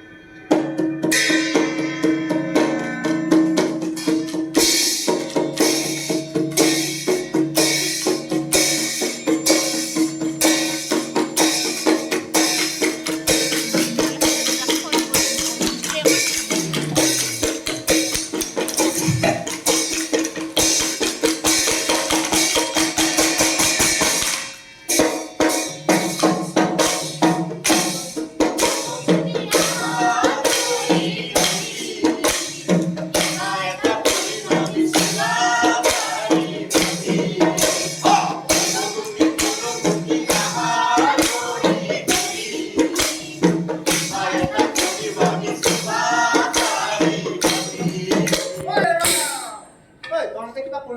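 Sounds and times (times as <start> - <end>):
hand percussion: 0.0 - 49.8
fast tambourine rhythm: 1.1 - 49.6
person singing: 13.7 - 17.9.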